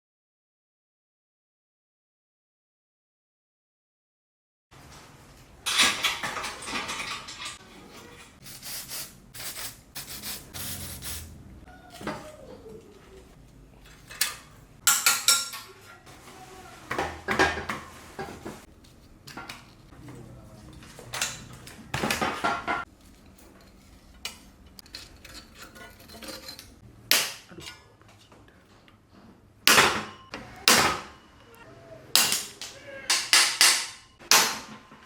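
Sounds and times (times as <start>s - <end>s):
metal tools clinking and clattering: 5.6s - 8.4s, 13.8s - 16.0s, 20.6s - 26.8s.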